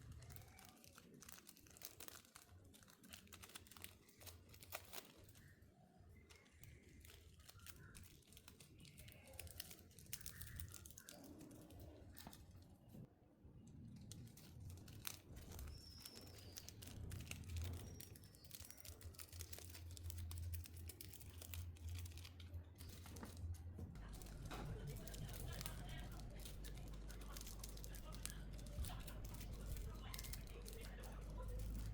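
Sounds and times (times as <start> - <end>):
wrapping crinkling and rustling: 0.0 - 31.9
low steady hum: 19.6 - 31.9.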